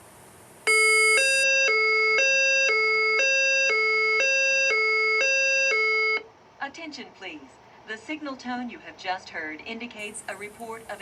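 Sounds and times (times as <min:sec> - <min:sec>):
two-tone alarm signal: 0:00.7 - 0:06.2.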